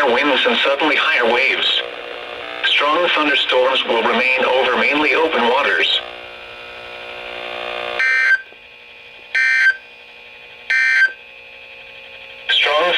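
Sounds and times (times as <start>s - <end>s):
buzzing data bursts: 0.0s - 8.5s
steady electronic hum: 0.0s - 12.9s.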